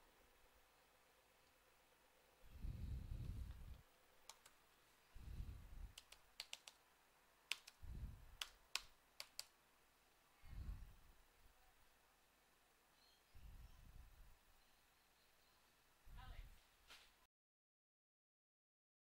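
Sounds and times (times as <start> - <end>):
keyboard keys clicking: 5.9 - 6.8.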